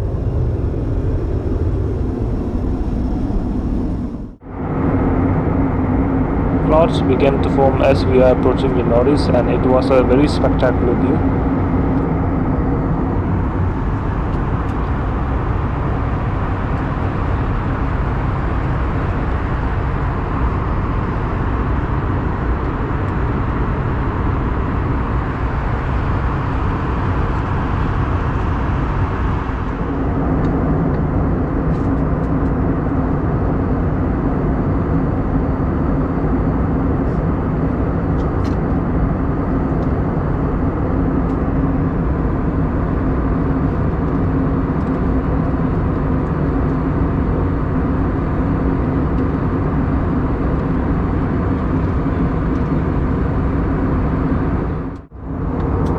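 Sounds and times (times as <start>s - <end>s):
low steady hum: 0.0s - 55.9s.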